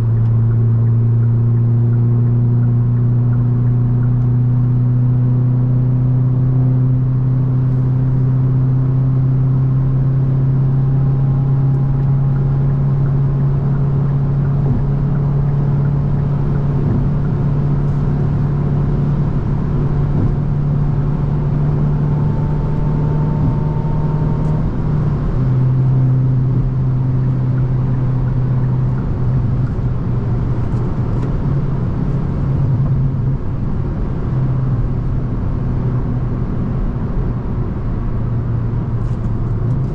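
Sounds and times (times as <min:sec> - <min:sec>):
car engine pulling steadily: 0:00.0 - 0:39.9
tyre and road noise: 0:10.9 - 0:39.9.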